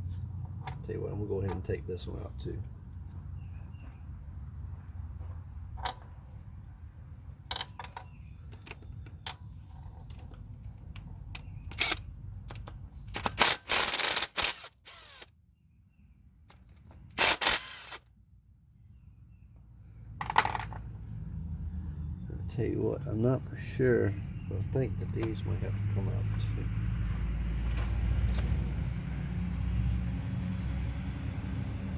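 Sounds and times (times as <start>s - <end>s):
loud rattling bursts: 13.1s - 15.3s, 17.2s - 18.0s.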